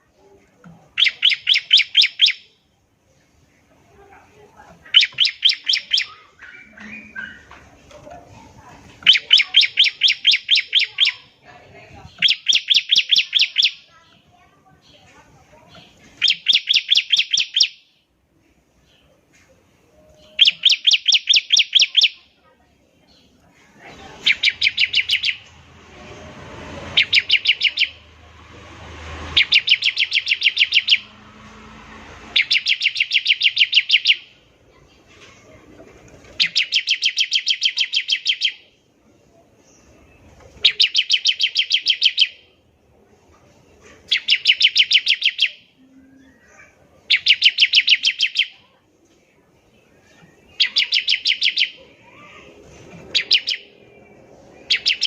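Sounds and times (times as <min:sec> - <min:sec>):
bird singing rapid stuttering notes: 0:00.9 - 0:02.6, 0:04.8 - 0:07.5, 0:08.9 - 0:11.4, 0:12.0 - 0:14.3, 0:15.7 - 0:17.8, 0:20.3 - 0:22.2, 0:24.0 - 0:31.6, 0:32.2 - 0:34.5, 0:36.2 - 0:38.7, 0:39.7 - 0:42.5, 0:44.0 - 0:45.7, 0:46.3 - 0:48.6, 0:49.8 - 0:55.0.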